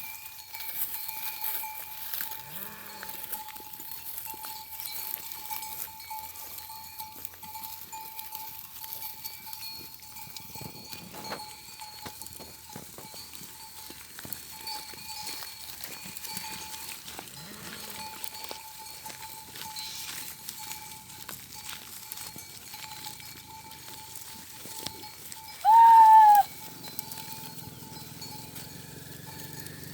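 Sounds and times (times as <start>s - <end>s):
animal neck bells clinking: 0.0s - 29.9s
low animal call: 25.6s - 26.7s.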